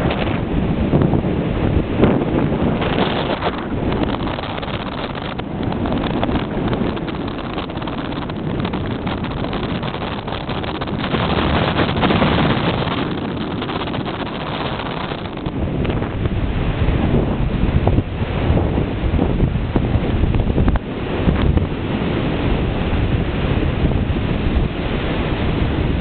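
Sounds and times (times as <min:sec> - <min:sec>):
breaking surf: 0:00.0 - 0:26.0
wind buffeting microphone: 0:00.0 - 0:26.0.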